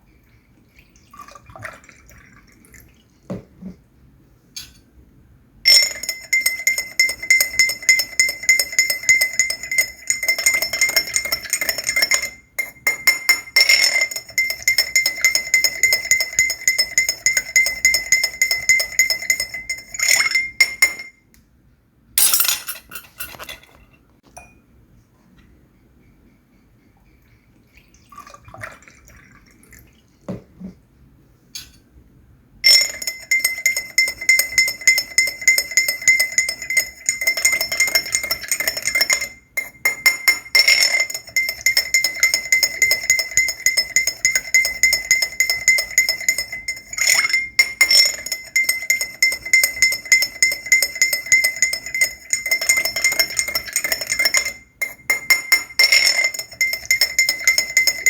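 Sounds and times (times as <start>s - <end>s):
teaspoon clinking in a glass: 5.7s - 21.2s, 22.2s - 24.6s, 32.6s - 58.0s
soft knocks and clinks: 22.2s - 24.6s.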